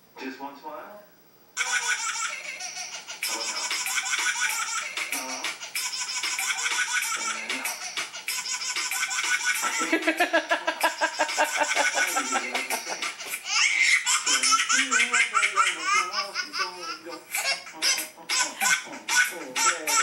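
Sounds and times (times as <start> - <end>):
baby giggling and laughing: 1.6 - 20.0
baby squealing: 13.3 - 20.0.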